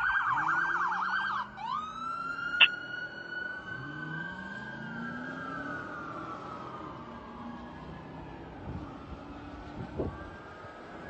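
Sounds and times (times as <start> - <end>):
electronic siren yelp and wail: 0.0 - 6.0.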